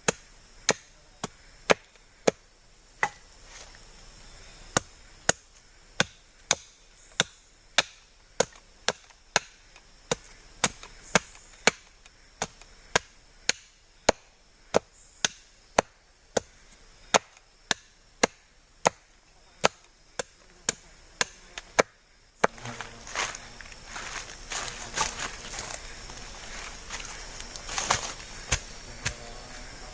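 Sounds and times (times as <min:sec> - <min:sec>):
wood being chopped: 0:03.0 - 0:03.2, 0:06.0 - 0:16.5, 0:19.6 - 0:23.3, 0:27.7 - 0:29.4.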